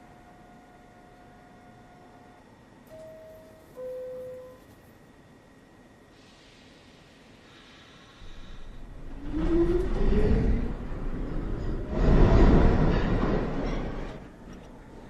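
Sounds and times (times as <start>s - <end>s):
train traction motor whine: 0.0s - 4.8s
wheels rumbling on rail: 8.2s - 15.0s.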